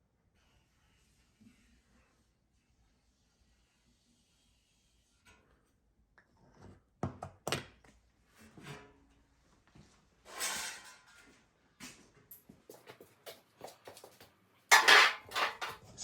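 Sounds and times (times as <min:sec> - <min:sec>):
light metal clatter: 0:12.3 - 0:16.0.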